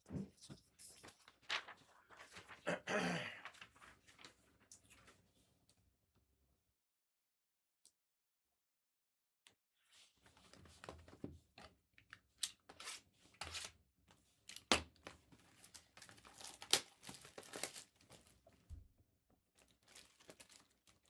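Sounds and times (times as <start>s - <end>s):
wrappers crinkling: 15.5s - 18.4s, 19.6s - 21.0s
foil card packs tearing: 15.7s - 18.3s, 19.8s - 21.0s.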